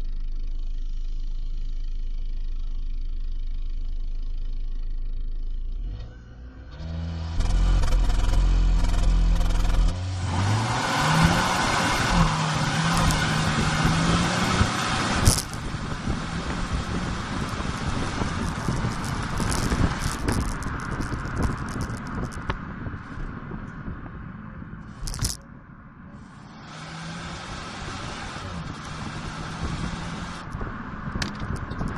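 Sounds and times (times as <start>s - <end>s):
wind and road noise: 0.0s - 31.9s
car engine revving and accelerating: 5.6s - 23.2s, 26.2s - 31.9s.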